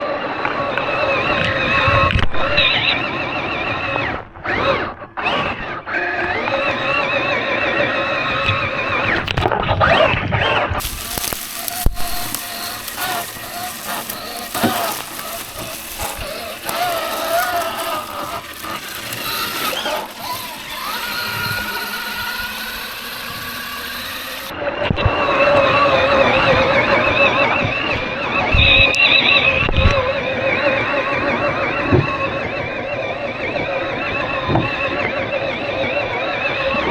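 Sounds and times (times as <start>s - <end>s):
rc car motor whining: 10.8s - 24.5s.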